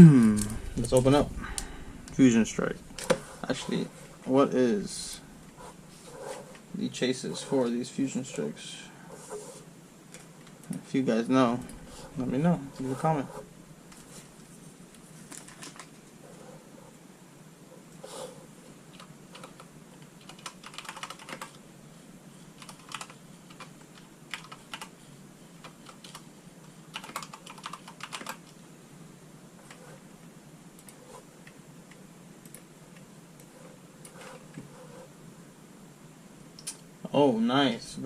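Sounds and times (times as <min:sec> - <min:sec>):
faint steady hum: 0:00.0 - 0:38.0.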